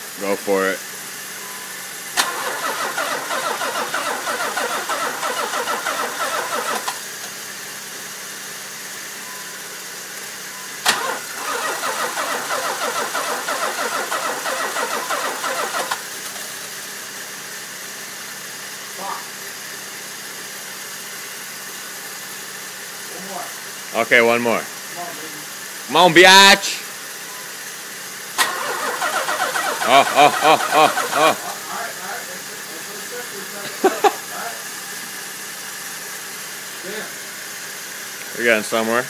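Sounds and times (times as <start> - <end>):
engine cranking: 2.2 - 7.2, 10.9 - 16.4, 28.4 - 31.7.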